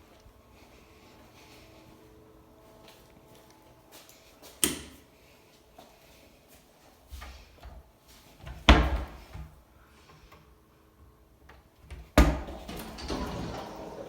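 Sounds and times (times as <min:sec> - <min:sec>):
doors banging shut: 0:12.2 - 0:14.0.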